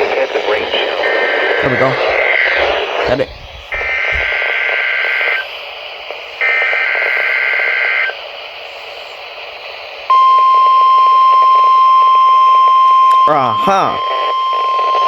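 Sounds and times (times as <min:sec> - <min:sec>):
steady warning alarm tone: 0:00.0 - 0:05.7, 0:06.3 - 0:08.2, 0:10.1 - 0:15.0
digital data bursts: 0:00.0 - 0:09.3
radio static hiss: 0:00.0 - 0:12.6, 0:13.2 - 0:15.0.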